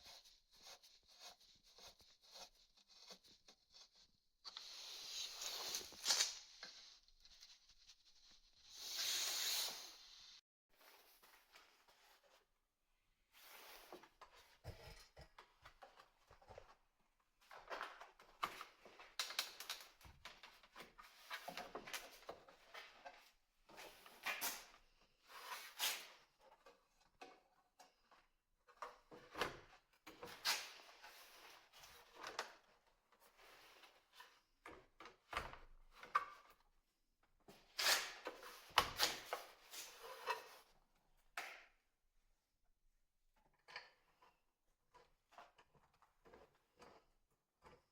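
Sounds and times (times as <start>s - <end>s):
handling scrapes and rustles: 0.0s - 12.6s.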